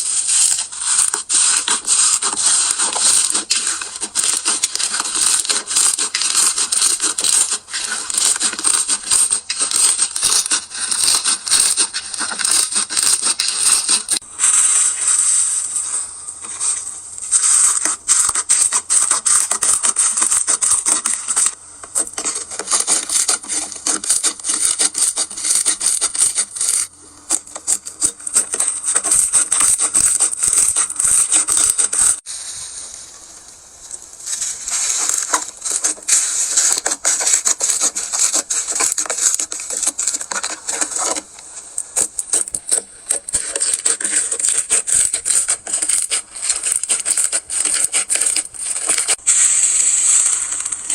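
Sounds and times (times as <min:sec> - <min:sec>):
crunchy slime crackling and popping: 0:00.0 - 0:15.1, 0:17.2 - 0:50.9.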